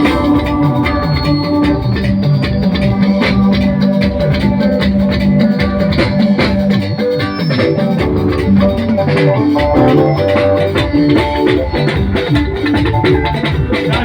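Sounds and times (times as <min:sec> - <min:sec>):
dense percussion beat: 0:00.0 - 0:14.0
plucked guitar: 0:00.0 - 0:14.0
shifting melody: 0:00.0 - 0:14.0.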